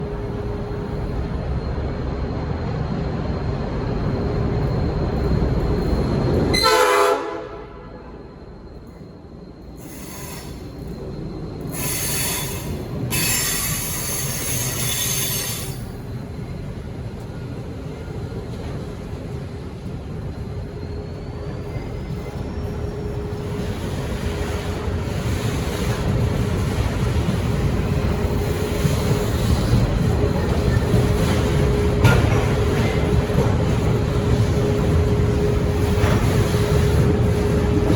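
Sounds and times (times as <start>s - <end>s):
diesel locomotives rumbling: 0.0s - 37.9s
train horn blast: 6.5s - 8.2s.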